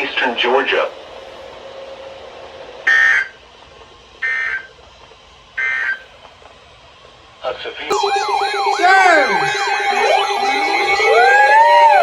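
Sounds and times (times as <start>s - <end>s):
digital data tone bursts: 7.9s - 12.0s.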